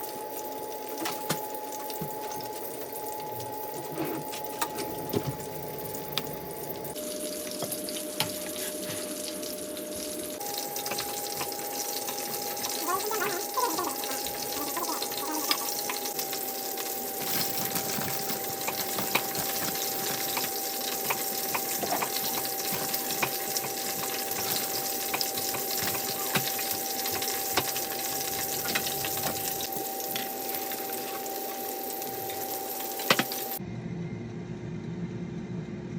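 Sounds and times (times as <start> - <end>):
food sizzling in a frying pan: 0.0 - 33.6.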